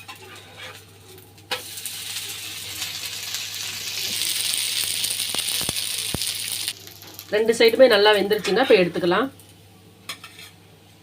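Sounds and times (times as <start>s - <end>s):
oil sizzling in a pan: 0.0s - 8.2s.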